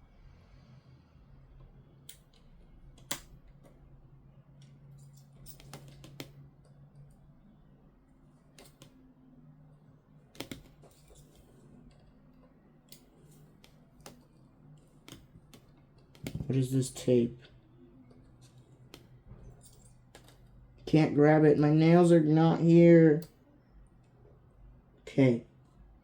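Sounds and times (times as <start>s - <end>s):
faint low hum: 0.0s - 26.0s
clicks and taps of small parts: 2.1s - 3.8s, 4.6s - 6.4s, 8.6s - 9.0s, 10.4s - 12.1s, 15.0s - 16.5s.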